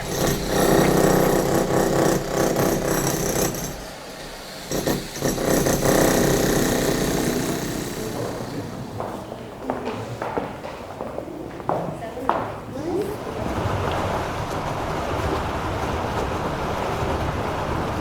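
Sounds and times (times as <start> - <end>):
power tool hammering: 0.0 - 9.1.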